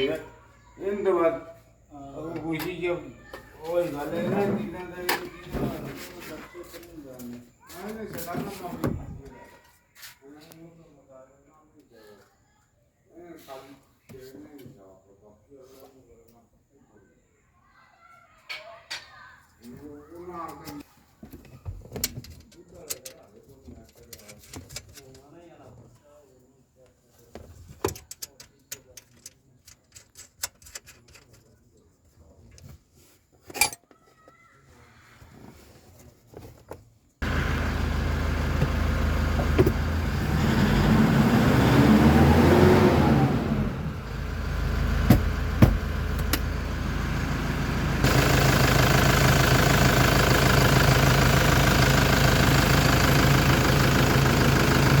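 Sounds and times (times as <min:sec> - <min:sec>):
vehicle engine revving: 0:37.2 - 0:55.0.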